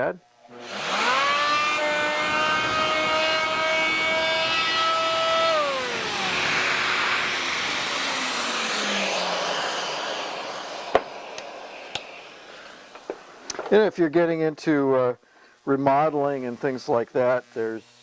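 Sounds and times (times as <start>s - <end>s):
multi-tool motor whining: 0.4s - 13.7s, 15.5s - 18.0s
sanding pad hissing: 0.5s - 13.5s.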